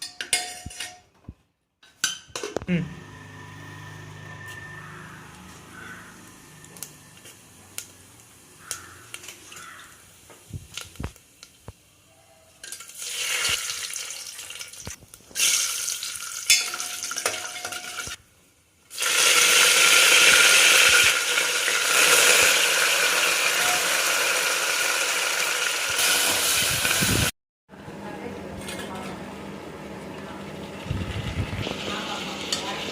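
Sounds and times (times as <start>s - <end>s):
food sizzling in oil: 12.6s - 18.2s, 18.9s - 27.3s.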